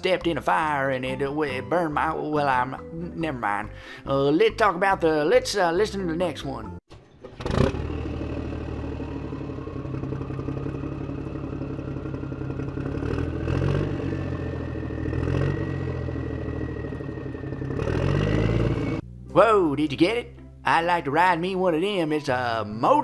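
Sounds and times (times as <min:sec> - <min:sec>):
motorcycle engine revving: 0:07.0 - 0:19.3.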